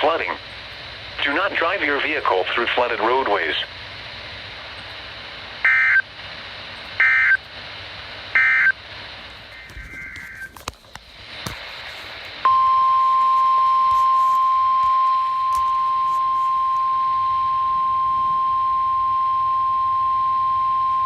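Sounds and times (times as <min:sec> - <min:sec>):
steady high alarm beep: 0:05.6 - 0:06.0, 0:07.0 - 0:07.4, 0:08.4 - 0:08.8, 0:12.4 - 0:21.0
high warbling data burst: 0:08.4 - 0:08.8, 0:09.5 - 0:10.6.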